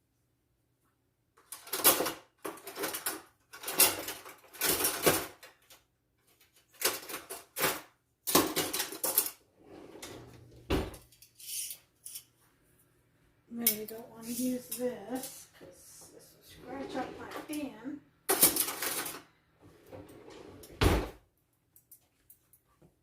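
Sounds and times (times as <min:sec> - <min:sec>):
kitchen utensils clattering: 0:01.5 - 0:05.6, 0:06.7 - 0:12.3, 0:13.6 - 0:15.5, 0:16.5 - 0:17.7, 0:18.3 - 0:21.1.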